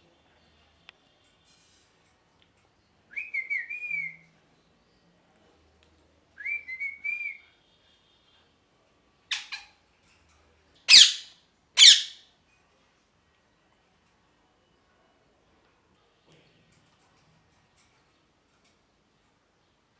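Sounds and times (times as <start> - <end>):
parrot screeching: 9.3 - 9.7, 10.9 - 12.2
parrot whistling: 10.9 - 12.2.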